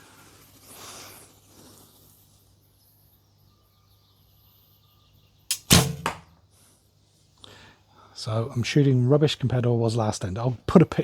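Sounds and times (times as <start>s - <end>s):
bow string snapping: 5.5s - 6.3s
arrow striking target: 5.5s - 6.4s.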